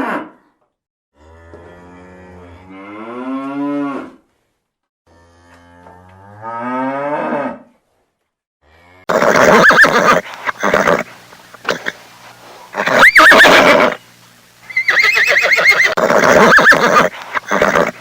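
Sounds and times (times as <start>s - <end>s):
horse neighing: 9.1s - 12.0s, 12.7s - 14.0s, 14.7s - 18.0s.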